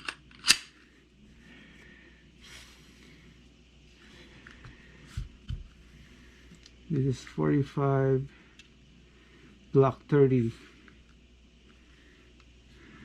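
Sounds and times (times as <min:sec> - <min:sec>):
pistol metallic click: 0:00.0 - 0:00.7.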